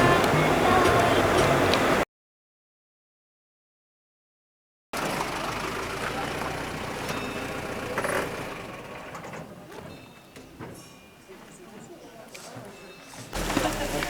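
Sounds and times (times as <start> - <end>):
road noise: 0.0 - 2.0, 5.0 - 10.5, 13.4 - 14.0
motor vehicle running: 5.0 - 9.6, 13.4 - 14.0.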